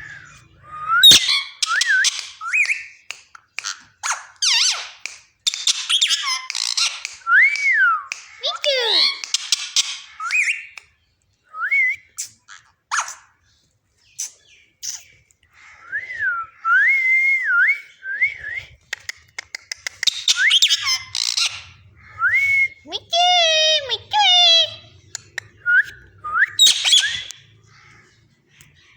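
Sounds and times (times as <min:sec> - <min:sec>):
parrot squawking: 0:00.0 - 0:02.7, 0:03.6 - 0:07.2, 0:08.1 - 0:10.8, 0:19.9 - 0:28.2
parrot whistling: 0:00.0 - 0:02.9, 0:20.0 - 0:23.4, 0:24.5 - 0:27.4.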